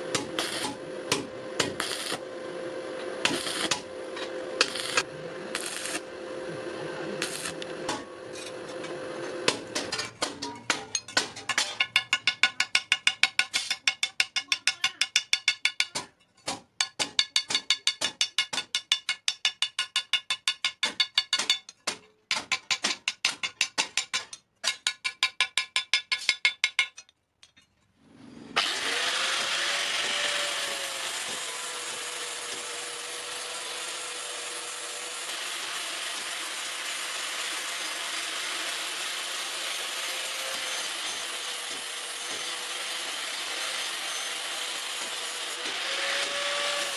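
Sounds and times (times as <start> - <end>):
electric grinder grinding metal: 0.0 - 9.9, 28.5 - 46.9.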